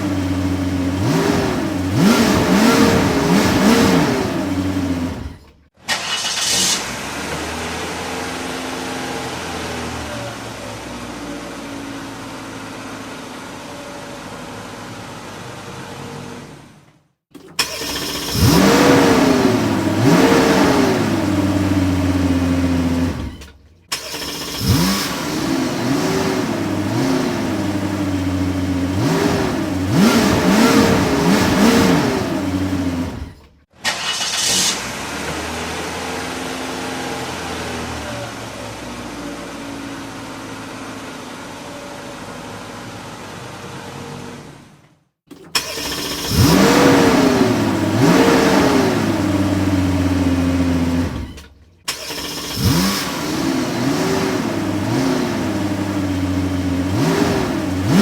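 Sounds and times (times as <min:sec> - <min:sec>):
engine running steadily: 0:00.0 - 0:05.6, 0:17.3 - 0:33.5, 0:45.3 - 0:58.0
car engine revving: 0:00.0 - 0:13.6, 0:17.4 - 0:44.7, 0:45.3 - 0:58.0
brief hiss: 0:05.9 - 0:07.0, 0:33.8 - 0:35.0.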